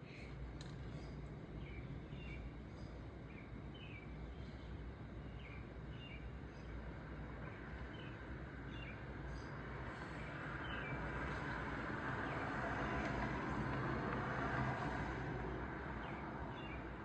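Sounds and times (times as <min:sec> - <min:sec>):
bird chirping: 0:00.9 - 0:04.1.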